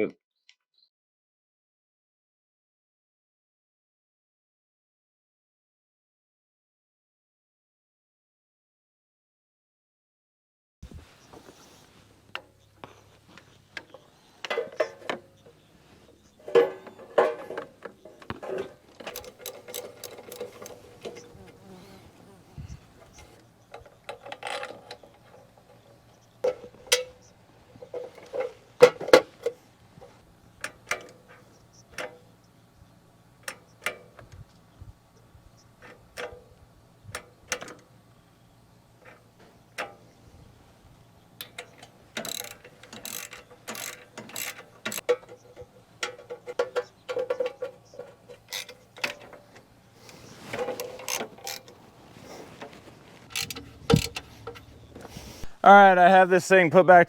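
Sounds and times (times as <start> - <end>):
hand tools clanking on metal: 12.4 - 21.6, 23.0 - 32.3, 41.4 - 55.6.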